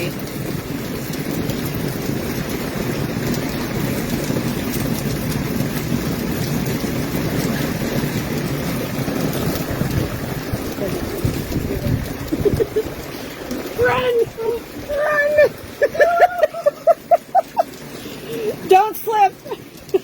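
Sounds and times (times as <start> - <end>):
heavy rain pouring: 0.0 - 20.0
wind buffeting microphone: 0.0 - 20.0.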